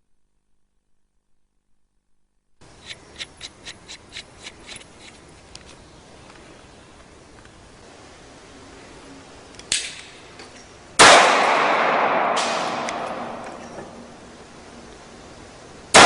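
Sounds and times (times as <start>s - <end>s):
blank pistol shot with echo: 11.0s - 13.5s.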